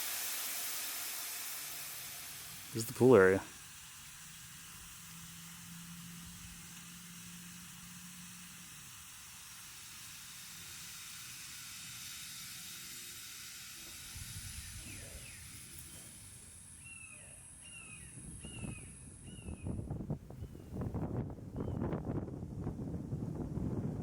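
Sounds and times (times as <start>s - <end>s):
faint outdoor hiss: 0.0s - 22.8s
bird chirping: 16.8s - 20.8s
wind buffeting microphone: 18.0s - 24.0s.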